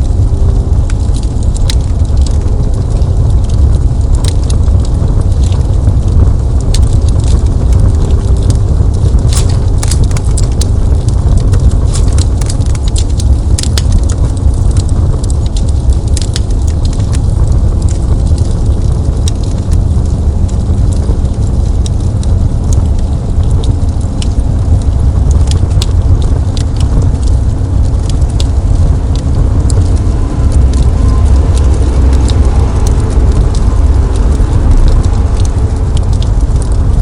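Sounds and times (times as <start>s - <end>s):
fire crackling and popping: 0.0s - 37.0s
low rumble of burning wood: 0.0s - 37.0s.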